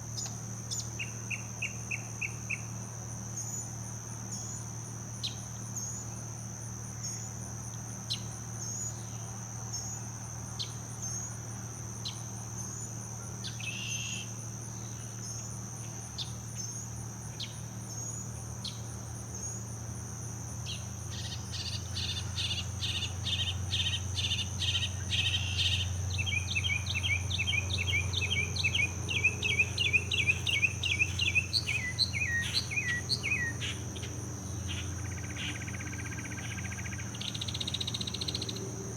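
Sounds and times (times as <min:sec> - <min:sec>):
high insect trill: 0:00.0 - 0:38.9
bird singing loudly: 0:25.2 - 0:33.8.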